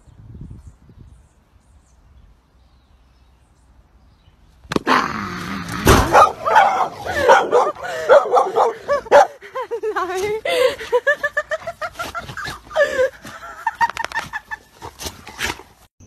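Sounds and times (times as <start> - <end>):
dog barking and yipping: 6.0 - 9.4.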